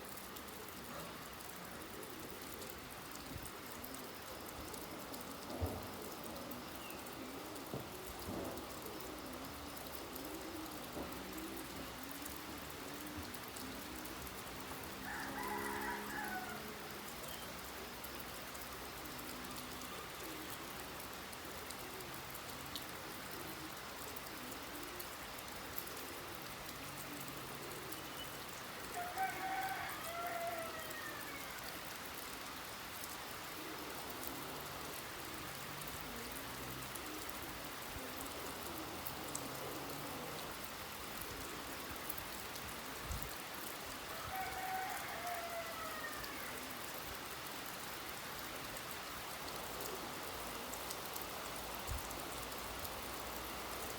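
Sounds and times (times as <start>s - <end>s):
steady rain falling: 0.0s - 53.9s
rooster crowing: 15.0s - 16.9s, 29.0s - 31.7s, 44.1s - 46.6s.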